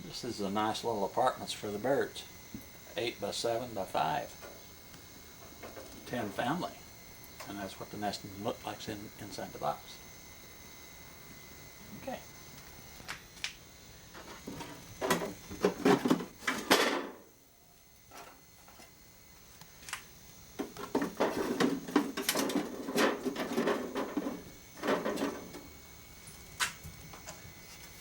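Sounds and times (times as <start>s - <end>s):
wooden bird house knocking and scraping: 14.2s - 17.2s, 20.6s - 25.6s.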